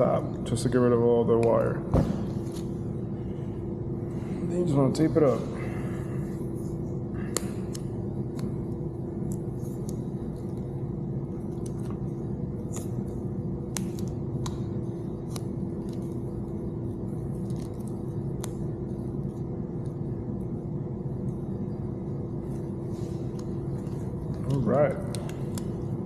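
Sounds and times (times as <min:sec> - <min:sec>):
low hum: 0:00.0 - 0:26.0
tape and wire crackles: 0:07.2 - 0:20.0.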